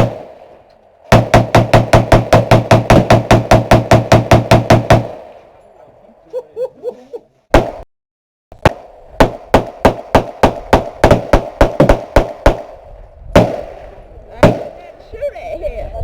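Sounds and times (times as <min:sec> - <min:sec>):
gunshots: 0:00.0 - 0:05.8, 0:07.5 - 0:07.8, 0:08.6 - 0:15.0.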